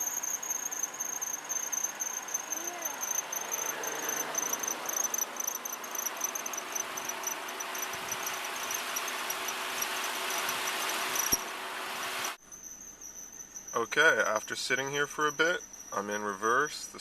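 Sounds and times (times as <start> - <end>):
belt squealing: 0.0 - 11.4
car engine running: 0.0 - 12.4.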